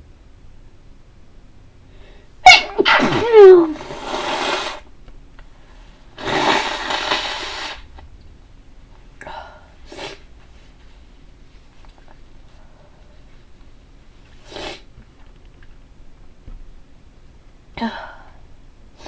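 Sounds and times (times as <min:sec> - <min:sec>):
person sneezing: 0:02.4 - 0:04.8.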